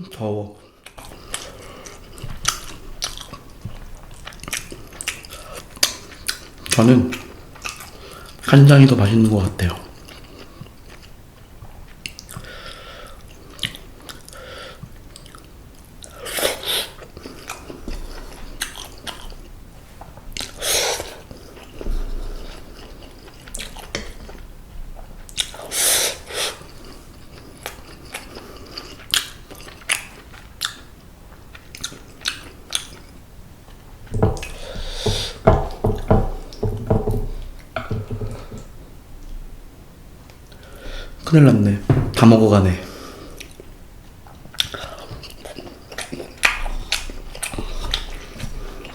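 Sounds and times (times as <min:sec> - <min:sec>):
person chewing and biting: 0:00.8 - 0:06.8, 0:15.1 - 0:19.5, 0:20.3 - 0:24.5, 0:25.3 - 0:30.9, 0:31.5 - 0:35.5, 0:44.5 - 0:48.9.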